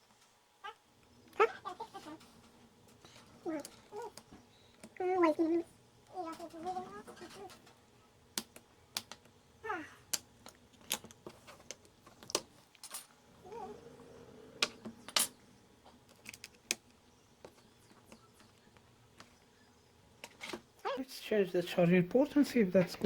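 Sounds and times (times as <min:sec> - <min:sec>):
small tools clicking and tapping: 0:08.4 - 0:09.4, 0:10.1 - 0:13.2, 0:14.6 - 0:19.4.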